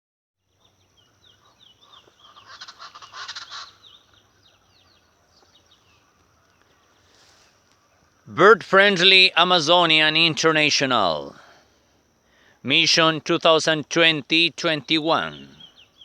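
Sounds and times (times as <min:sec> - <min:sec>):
small birds high down-slurred song: 0:00.4 - 0:10.0, 0:12.3 - 0:16.0
chachalacas chattering calls: 0:00.6 - 0:11.5, 0:12.3 - 0:16.0.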